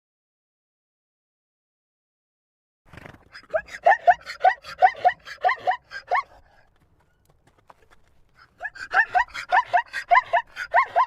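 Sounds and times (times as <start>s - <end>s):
zebra barking: 3.4s - 6.6s, 8.4s - 11.0s.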